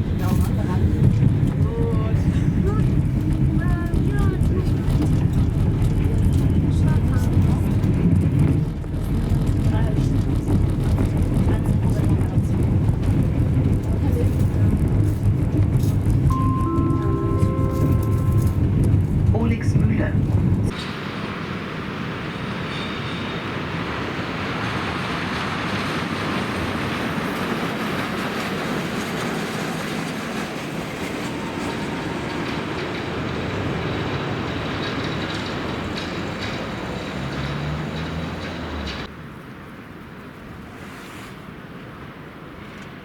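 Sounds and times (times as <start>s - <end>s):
train rolling past: 0.0s - 43.0s
wheel squeal: 22.6s - 23.6s.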